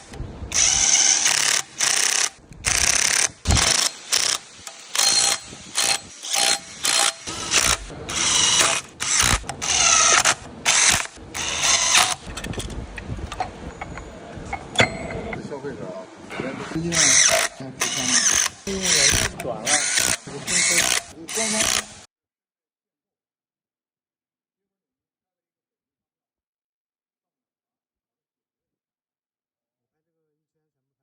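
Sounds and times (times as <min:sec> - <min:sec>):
power ratchet wrench bursts: 0:00.0 - 0:12.7, 0:16.8 - 0:22.1.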